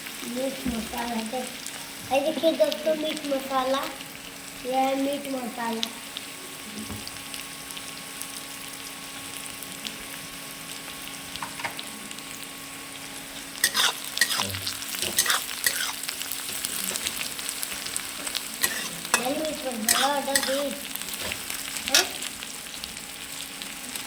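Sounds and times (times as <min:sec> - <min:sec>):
vegetables sizzling in a pan: 0:00.0 - 0:24.0
spoon stirring and scraping: 0:13.6 - 0:22.3.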